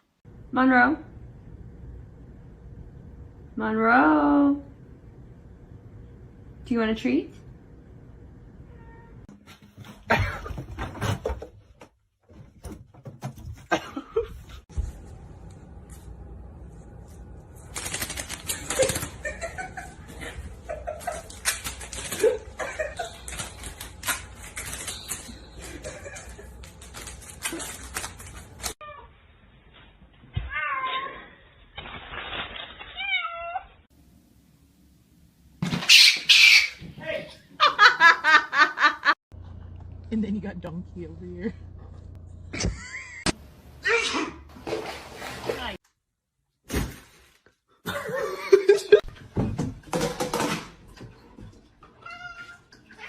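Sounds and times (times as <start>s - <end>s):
cats meowing: 51.9s - 53.0s.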